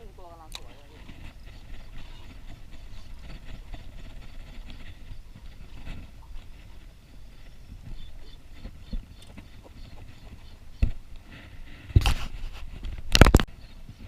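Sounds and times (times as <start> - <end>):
boat engine low rumble: 0.0 - 12.0.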